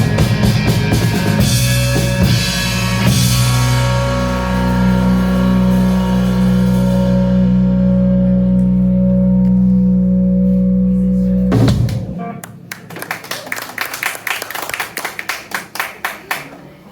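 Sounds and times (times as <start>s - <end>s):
rock band final chord: 0.0s - 12.8s
scattered clapping: 11.9s - 16.7s.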